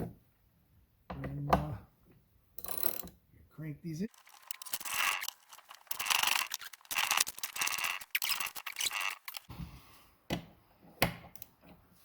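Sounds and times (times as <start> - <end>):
ratchet wrench clicking: 4.2 - 9.5.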